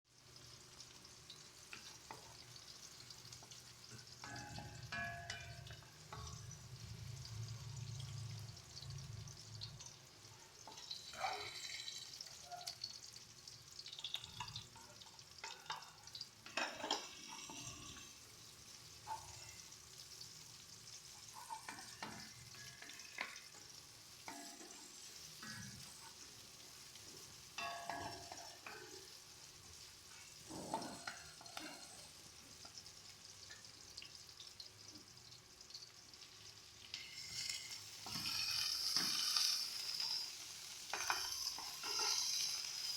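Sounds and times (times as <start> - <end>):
food sizzling in a pan: 0.0 - 42.9
utensil scraping a pan: 10.7 - 12.8, 37.0 - 42.9.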